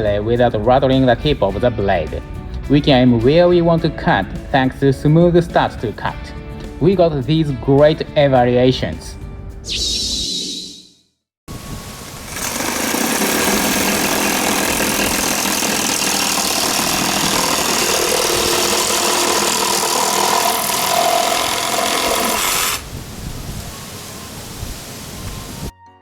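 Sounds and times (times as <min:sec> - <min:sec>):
reciprocating saw cutting plastic pipe: 0:12.2 - 0:22.9.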